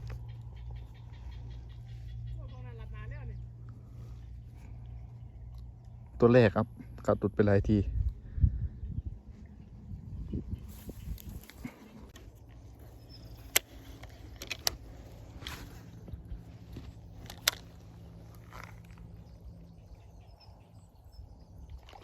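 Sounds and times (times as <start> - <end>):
steady low hum: 0.0 - 22.0
sharp clicks: 13.2 - 15.6.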